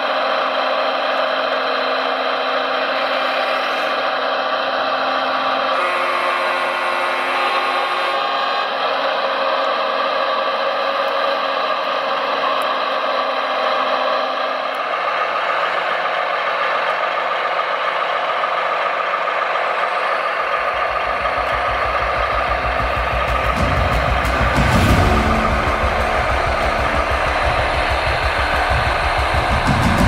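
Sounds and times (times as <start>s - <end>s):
low repeating pulse: 20.1s - 30.0s.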